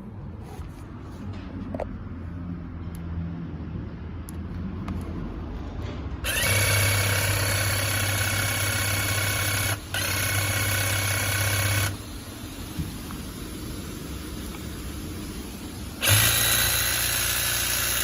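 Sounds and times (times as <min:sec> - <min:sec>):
hedge trimmer motor humming: 0:06.2 - 0:12.6, 0:16.0 - 0:18.0.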